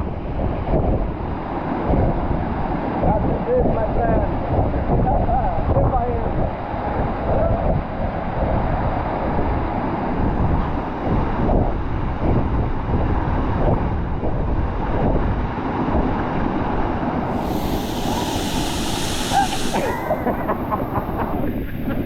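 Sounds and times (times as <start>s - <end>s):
wind buffeting microphone: 0.0s - 22.0s
bright hiss of spray: 17.3s - 22.0s
waterfall roaring: 17.3s - 22.0s.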